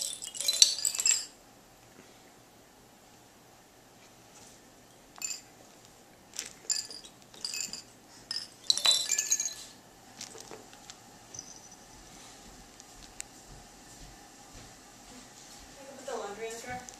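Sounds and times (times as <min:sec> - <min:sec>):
glass clinking: 0:00.0 - 0:01.4, 0:05.2 - 0:05.5, 0:06.4 - 0:09.8, 0:11.3 - 0:11.9.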